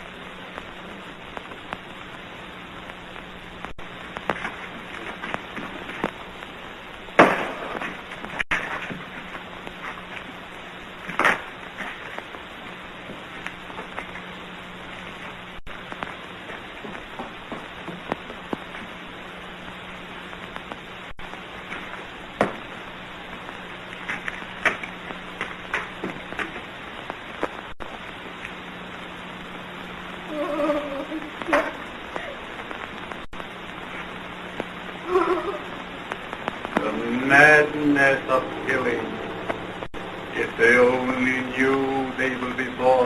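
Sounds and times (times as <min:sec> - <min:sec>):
film soundtrack hiss: 0:00.0 - 0:43.0
low hum: 0:00.0 - 0:43.0
pops and crackles: 0:00.1 - 0:19.3, 0:20.3 - 0:29.0, 0:31.2 - 0:37.0.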